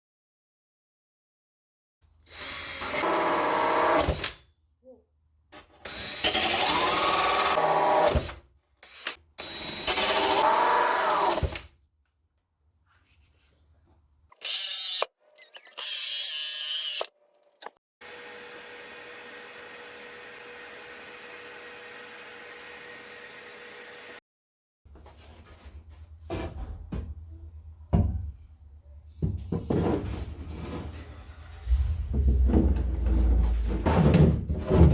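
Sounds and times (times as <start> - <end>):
power drill boring into wood: 2.3 - 4.4, 5.8 - 11.6, 14.3 - 24.2.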